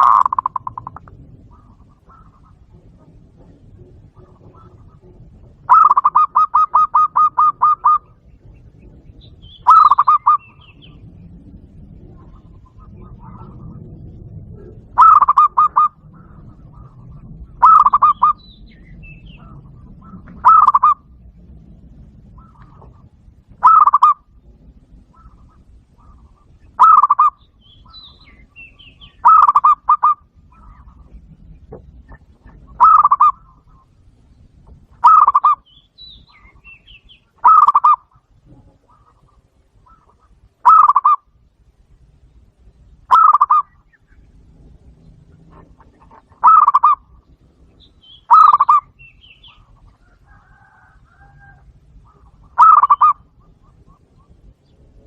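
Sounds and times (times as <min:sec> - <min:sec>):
dove cooing through a speaker: 0:00.0 - 0:35.6, 0:37.3 - 0:41.4, 0:43.0 - 0:55.0
faint high bird chirps: 0:04.1 - 0:11.2, 0:25.1 - 0:31.8, 0:46.4 - 0:54.9.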